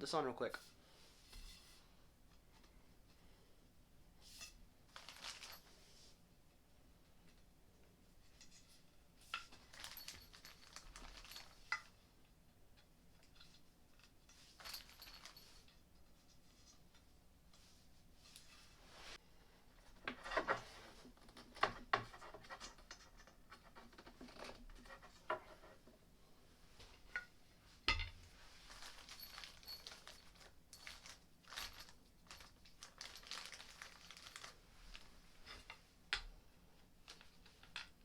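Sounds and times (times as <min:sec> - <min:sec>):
scraping and rustling: 0:28.2 - 0:35.8.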